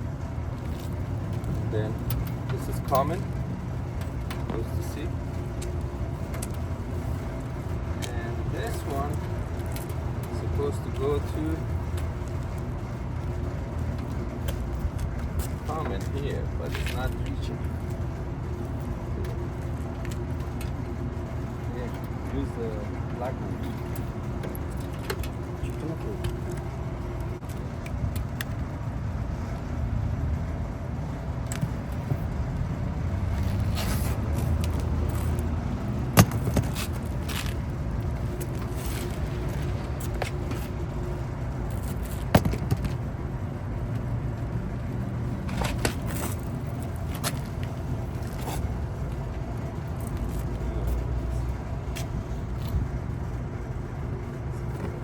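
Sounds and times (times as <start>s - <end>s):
steady low rumble: 0.0s - 55.0s
clicks and scrapes of wiring work: 45.4s - 52.9s.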